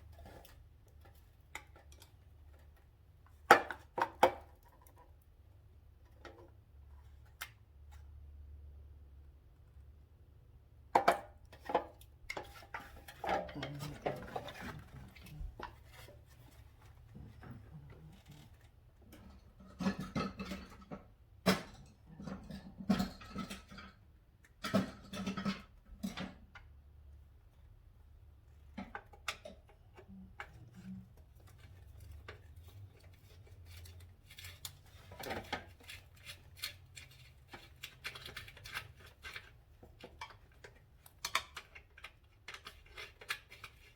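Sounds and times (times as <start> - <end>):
metal and plastic parts handled: 28.5 - 43.9.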